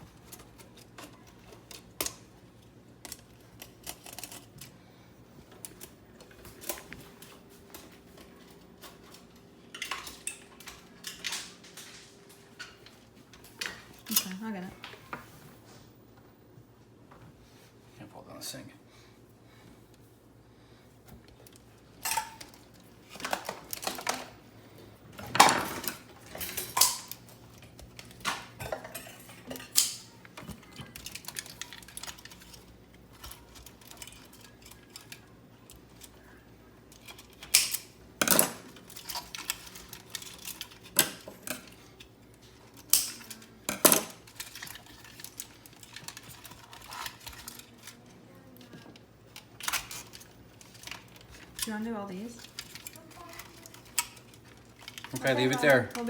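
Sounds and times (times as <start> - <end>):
plastic and metal parts clattering: 3.0 - 4.7, 21.4 - 24.4, 25.2 - 56.0.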